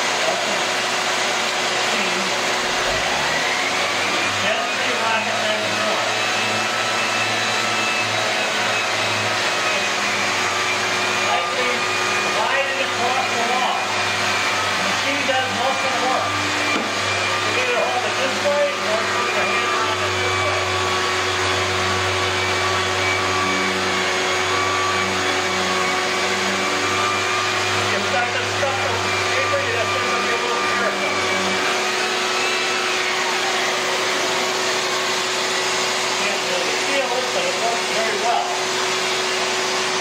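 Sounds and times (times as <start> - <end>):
orbital sander whirring: 0.0 - 40.0
vacuum hiss: 0.0 - 40.0.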